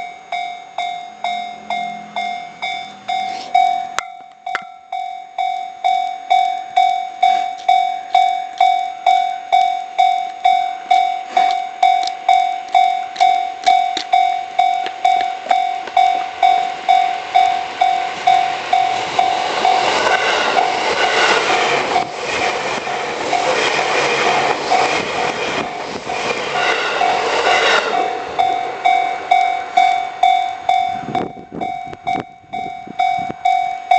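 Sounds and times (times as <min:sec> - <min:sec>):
level crossing bell ringing: 0:00.0 - 0:20.0, 0:28.0 - 0:33.9
train wheels clattering: 0:09.6 - 0:32.7.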